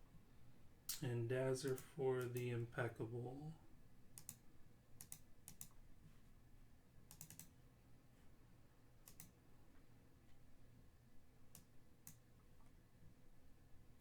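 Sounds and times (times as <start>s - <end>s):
faint sharp clicks: 0.9s - 2.5s, 9.1s - 9.4s, 11.5s - 12.2s.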